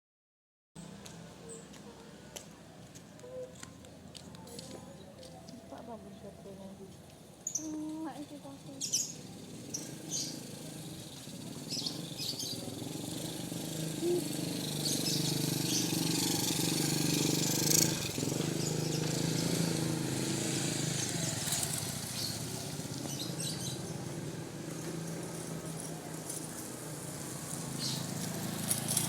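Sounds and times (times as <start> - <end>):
vehicle engine passing: 8.1 - 29.0
bird chirps: 11.6 - 12.7.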